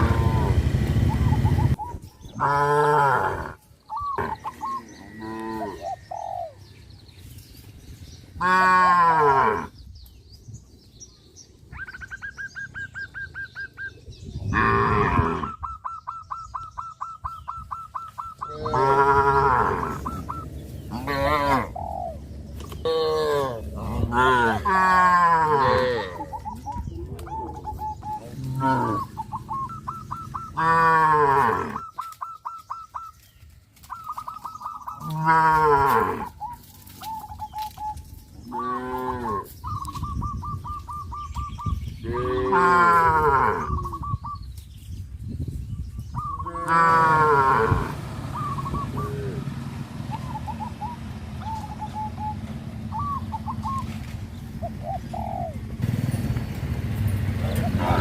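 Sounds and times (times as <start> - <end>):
cows mooing: 2.4 - 3.6, 4.2 - 5.8, 8.4 - 9.7, 14.5 - 15.6, 18.4 - 20.3, 20.9 - 21.8, 22.8 - 26.4, 28.2 - 31.9, 35.0 - 36.4, 38.5 - 39.6, 42.0 - 44.0, 46.4 - 50.1.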